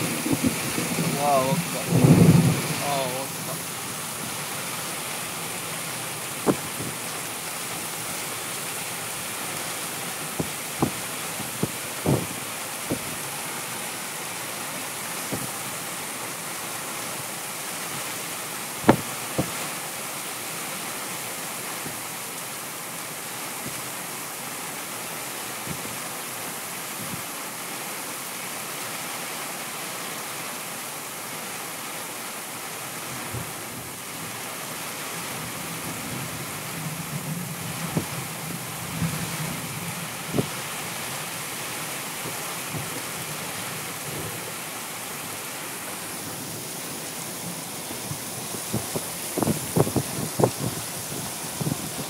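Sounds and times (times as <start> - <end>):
heavy rain hissing: 0.0 - 52.0
sharp knocks: 6.5 - 6.7, 10.4 - 12.3.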